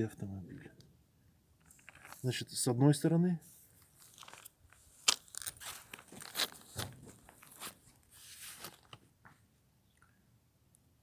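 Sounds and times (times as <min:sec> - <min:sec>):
crunching and scraping clicks: 0:04.0 - 0:07.8.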